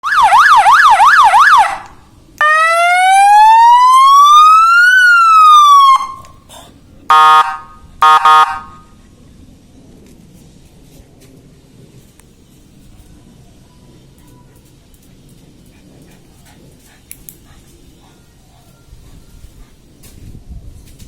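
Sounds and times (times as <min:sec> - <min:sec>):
electronic siren yelp and wail: 0:00.0 - 0:06.3, 0:07.1 - 0:08.8
horn blasts: 0:07.1 - 0:08.9.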